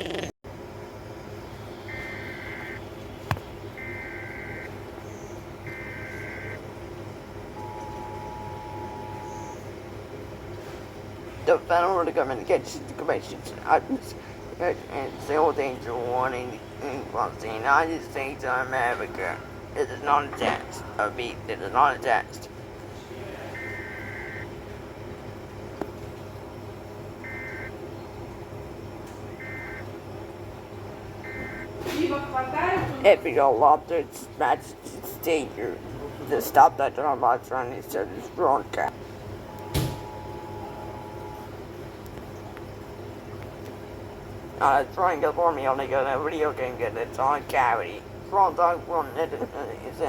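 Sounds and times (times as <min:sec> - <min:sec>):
low hum: 0:00.0 - 0:50.0
low background noise: 0:00.5 - 0:50.0
data bursts: 0:01.9 - 0:02.8, 0:03.8 - 0:04.7, 0:23.5 - 0:24.5, 0:27.2 - 0:27.7, 0:29.4 - 0:29.9, 0:31.2 - 0:31.8
two-tone attention signal: 0:03.8 - 0:04.7, 0:05.7 - 0:06.6, 0:07.6 - 0:09.6, 0:23.5 - 0:24.5, 0:27.2 - 0:27.7, 0:29.4 - 0:29.9, 0:31.2 - 0:31.7, 0:39.5 - 0:41.5
digital data tones: 0:29.4 - 0:29.8, 0:31.2 - 0:31.7.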